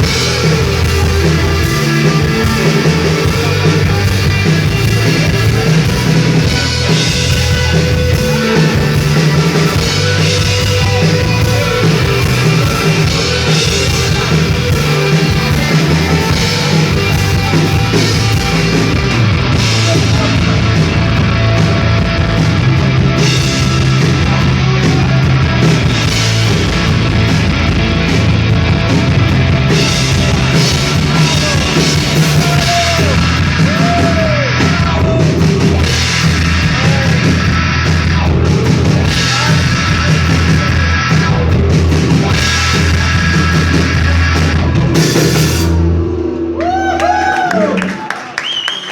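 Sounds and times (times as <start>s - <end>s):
rock band playing live: 0.0s - 48.9s.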